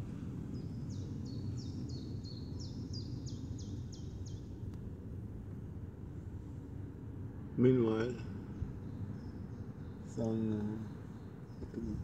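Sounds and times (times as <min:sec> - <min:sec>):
low outdoor rumble: 0:00.0 - 0:12.0.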